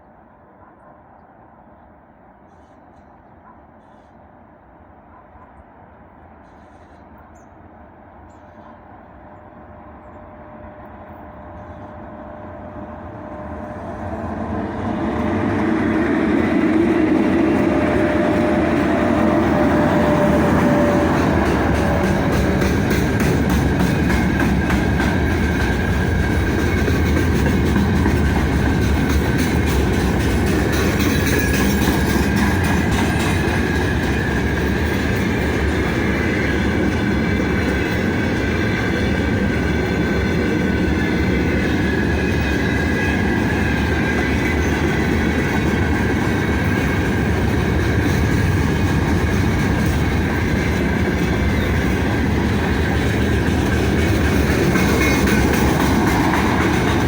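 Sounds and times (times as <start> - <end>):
train wagons rumbling: 8.3 - 57.0
wheels clattering over rail joints: 13.6 - 57.0.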